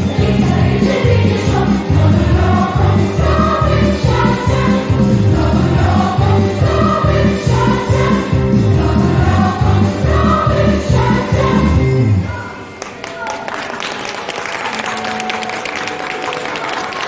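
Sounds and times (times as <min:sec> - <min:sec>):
children's choir singing: 0:00.0 - 0:12.7.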